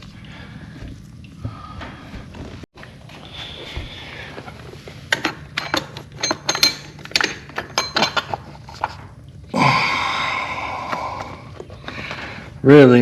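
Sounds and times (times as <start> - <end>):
metal hand tools clinking: 5.1 - 8.4.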